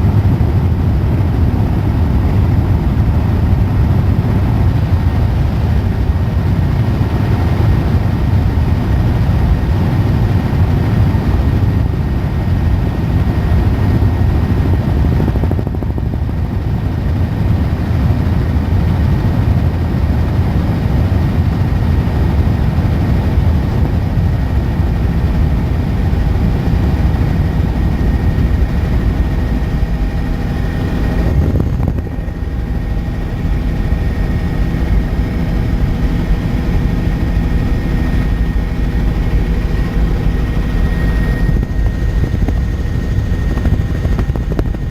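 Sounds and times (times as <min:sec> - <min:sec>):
helicopter rotor drone: 0:00.0 - 0:44.9
faint high whine: 0:23.2 - 0:44.9.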